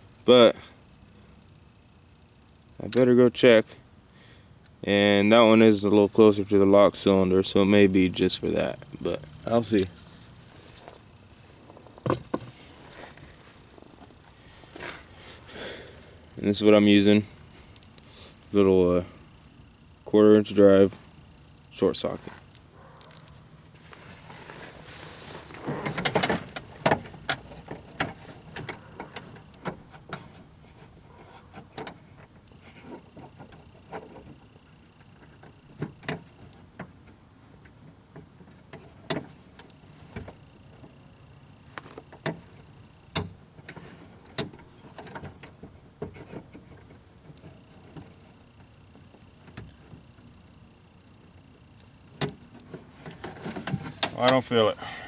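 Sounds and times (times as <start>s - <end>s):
scraping rustle: 8.1s - 15.7s, 22.0s - 22.6s, 23.2s - 34.5s, 52.6s - 54.5s.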